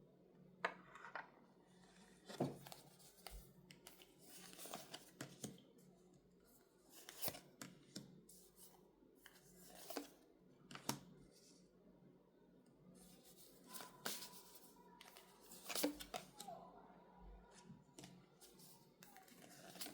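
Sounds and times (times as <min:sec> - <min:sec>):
cards rustling and tapping: 0:02.2 - 0:05.6, 0:06.9 - 0:08.2, 0:09.2 - 0:11.1, 0:13.2 - 0:16.5, 0:18.0 - 0:19.9.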